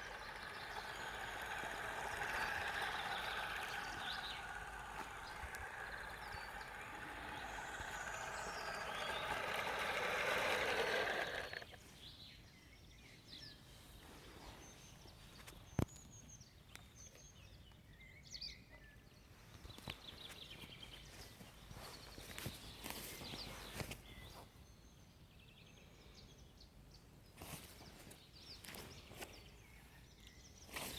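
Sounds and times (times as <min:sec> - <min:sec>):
toy truck electric motor running: 0:00.0 - 0:11.8
birds chirping faintly: 0:00.0 - 0:30.9.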